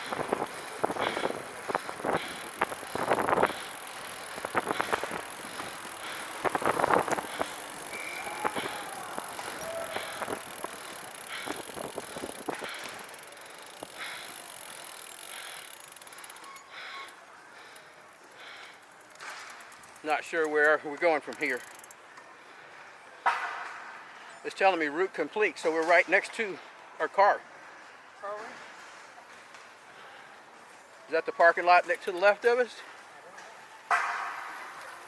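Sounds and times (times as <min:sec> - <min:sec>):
trike clicking and rattling: 0:00.0 - 0:22.0.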